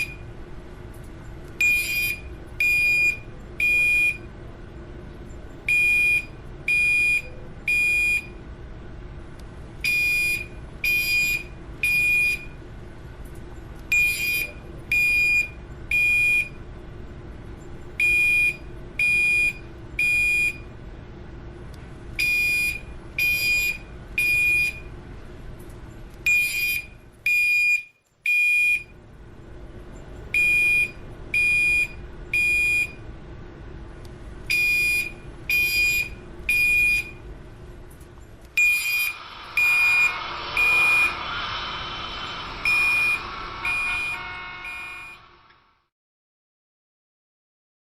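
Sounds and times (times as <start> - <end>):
fire alarm high-pitched beeps: 1.6 - 4.3, 5.7 - 8.4, 9.8 - 12.6, 13.9 - 16.6, 18.0 - 20.6, 22.2 - 24.9, 26.3 - 28.9, 30.4 - 33.0, 34.5 - 37.2, 38.6 - 41.4, 42.4 - 45.3.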